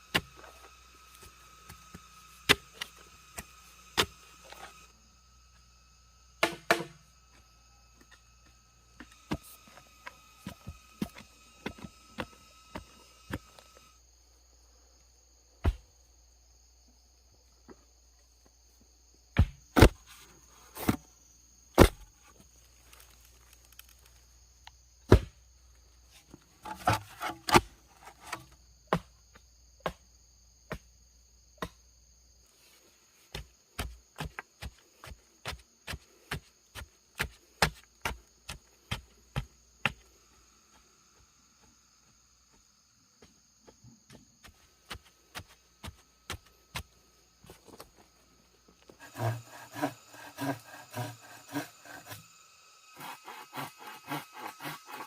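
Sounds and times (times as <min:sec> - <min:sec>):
wood chopping strikes: 0:00.0 - 0:04.8, 0:06.4 - 0:07.0, 0:15.6 - 0:15.8, 0:19.4 - 0:20.0, 0:21.8 - 0:22.1, 0:25.1 - 0:25.4, 0:26.6 - 0:29.1, 0:29.8 - 0:30.0, 0:31.6 - 0:31.8
high insect buzz: 0:00.0 - 0:55.0.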